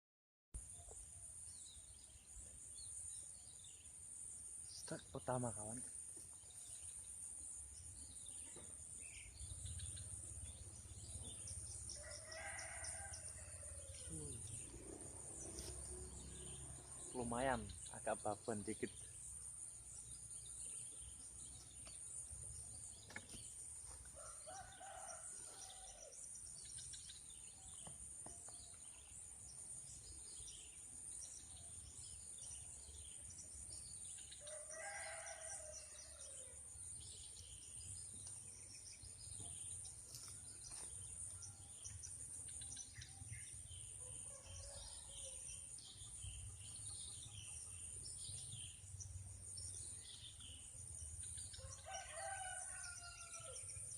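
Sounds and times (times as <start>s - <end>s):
insects droning: 0.6s - 53.9s
small birds chirping: 4.6s - 53.9s
rooster crowing: 12.0s - 14.4s, 24.2s - 26.1s, 34.4s - 36.4s, 51.6s - 53.6s.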